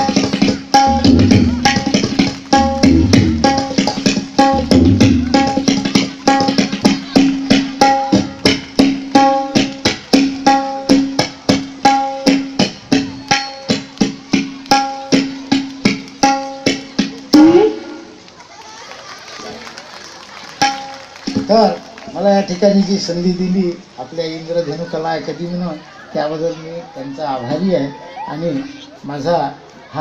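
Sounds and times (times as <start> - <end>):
tabla playing steady rhythm: 0.0 - 18.1, 20.5 - 23.6.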